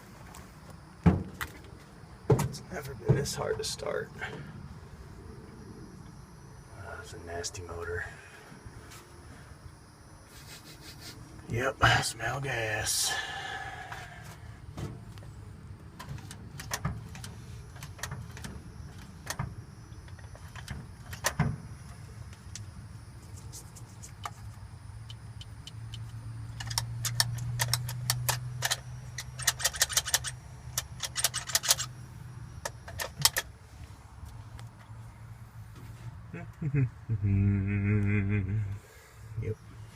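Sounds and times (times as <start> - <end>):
sharp clicks: 23.3 - 32.0
engine cranking by starter: 26.5 - 32.0.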